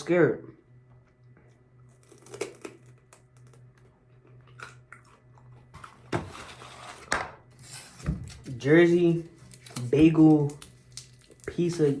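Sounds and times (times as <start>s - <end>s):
food packaging crinkling: 1.9s - 6.0s, 7.7s - 12.0s.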